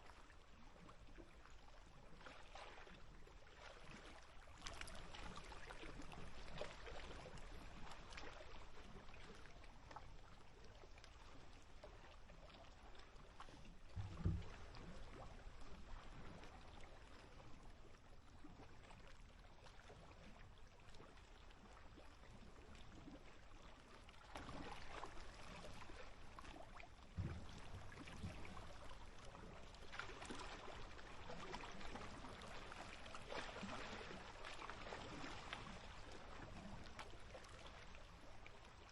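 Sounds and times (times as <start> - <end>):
small waves lapping: 0.0 - 38.9
low thump: 13.9 - 14.9.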